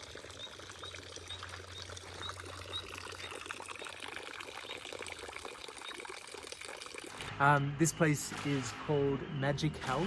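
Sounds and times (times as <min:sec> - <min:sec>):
water running and trickling: 0:00.0 - 0:07.3.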